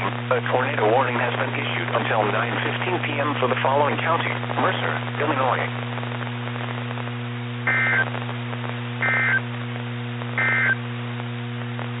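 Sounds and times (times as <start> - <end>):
steady low hum: 0.0 - 12.0
two-tone digital data warble: 7.7 - 8.1, 9.0 - 9.4, 10.4 - 10.8.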